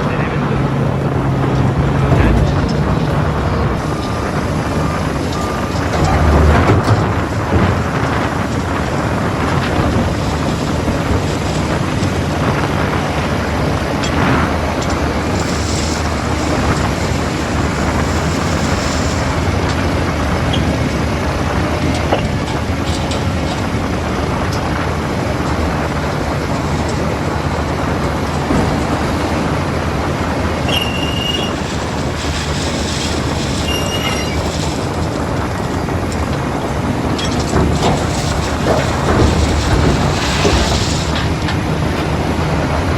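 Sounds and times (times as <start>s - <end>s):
diesel engine running: 0.0s - 42.9s
high-pitched squeal: 30.6s - 34.8s.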